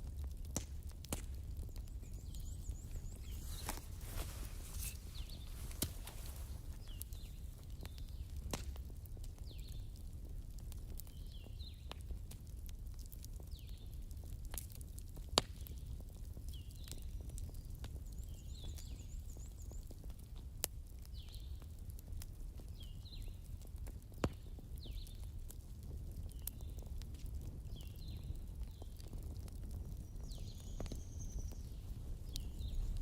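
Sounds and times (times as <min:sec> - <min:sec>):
bonfire crackling: 0:00.0 - 0:33.0
bird chirping: 0:01.7 - 0:07.4
loud sharp fire pops: 0:06.7 - 0:08.9, 0:15.3 - 0:15.8.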